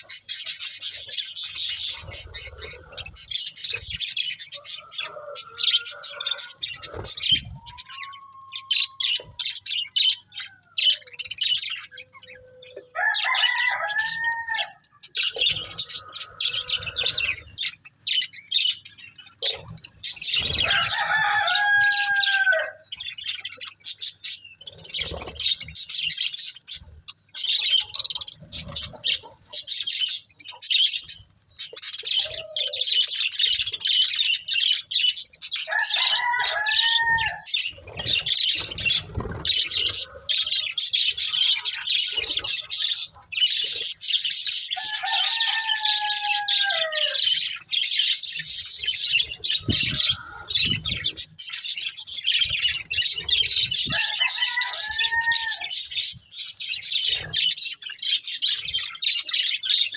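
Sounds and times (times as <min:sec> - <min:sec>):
drawn-out arching bird calls: 0:00.0 - 0:18.9, 0:24.0 - 0:57.6
budgerigars chirping: 0:00.0 - 0:59.9.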